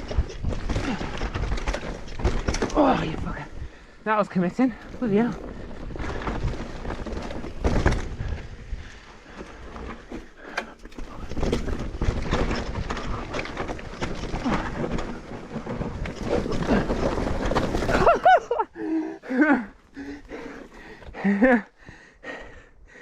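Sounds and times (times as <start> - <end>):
bike knocks and rattles: 0.0 - 3.8, 4.6 - 18.6
bike tyres on dirt: 0.0 - 22.0
wind buffeting microphone: 4.7 - 9.9.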